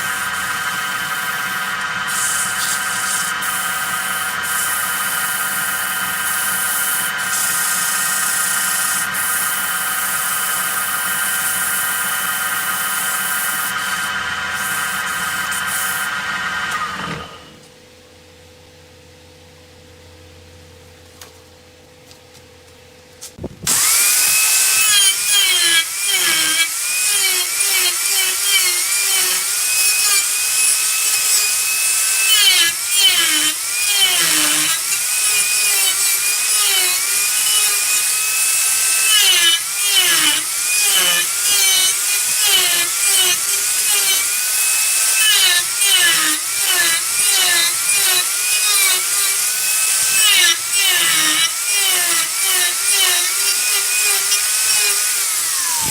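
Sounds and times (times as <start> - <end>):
turning tool scraping wood: 0.0 - 16.2
wood lathe whining: 0.0 - 17.5, 23.7 - 55.9.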